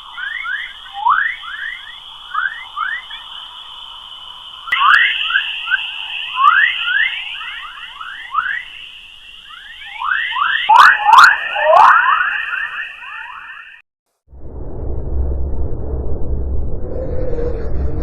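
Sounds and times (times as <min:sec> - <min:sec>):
steady high hiss: 0:00.0 - 0:13.8.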